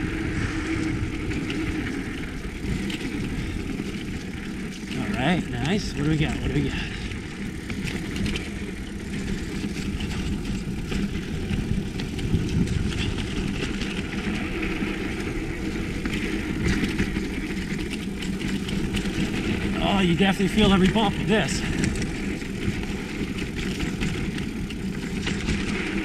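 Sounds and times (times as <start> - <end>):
wind on microphone: 0.0 - 3.9, 10.1 - 17.2
bike rattling and knocking: 0.0 - 26.0
bike tyres rumbling: 0.0 - 26.0.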